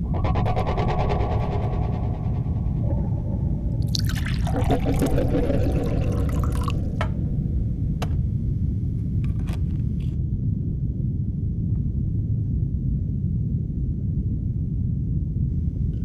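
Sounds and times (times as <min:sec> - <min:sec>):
steady low rumble: 0:00.0 - 0:16.0
water pouring and splashing: 0:03.8 - 0:07.2.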